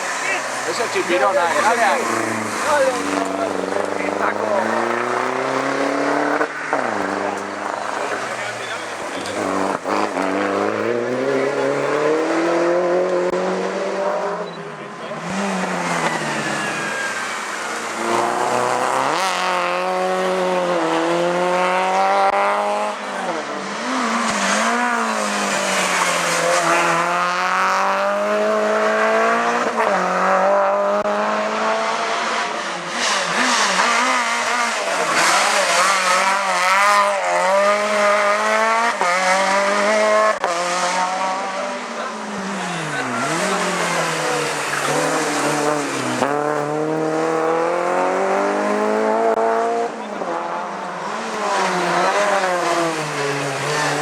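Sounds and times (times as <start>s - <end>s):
race car engines accelerating: 0.0s - 54.0s.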